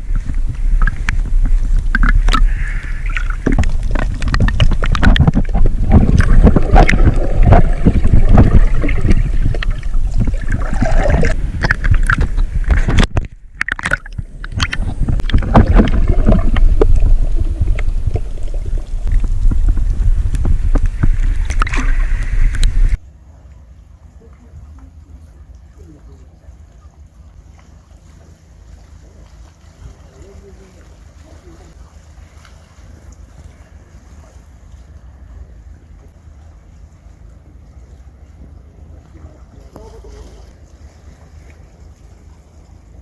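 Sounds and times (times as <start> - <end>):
wind buffeting: 0.0 - 13.5, 14.2 - 23.0
sea water splashing: 0.0 - 43.0.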